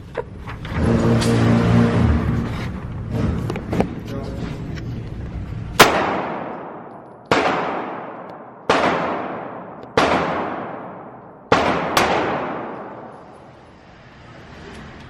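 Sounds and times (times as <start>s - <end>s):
gunshots with echoing decay: 5.8s - 13.4s.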